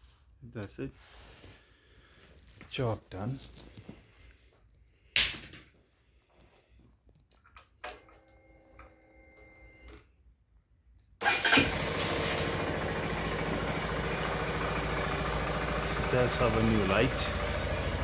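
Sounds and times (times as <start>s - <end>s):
motorcycle engine starting and idling: 11.2s - 18.0s.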